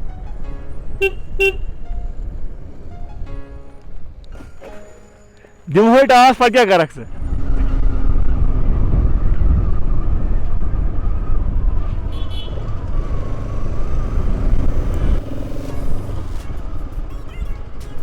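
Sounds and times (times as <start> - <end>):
wind rumble on microphone: 7.1 - 17.1
motorcycle engine running: 11.9 - 17.0.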